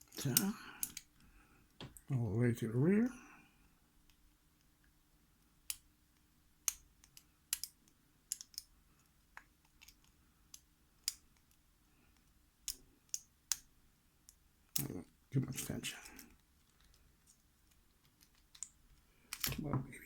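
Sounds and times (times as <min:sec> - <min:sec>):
lock pick clicking: 0:06.7 - 0:08.7.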